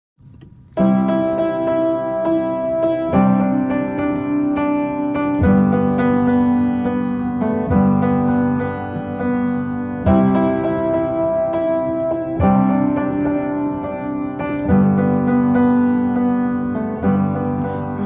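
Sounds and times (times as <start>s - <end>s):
electric piano chords: 0.2s - 18.0s.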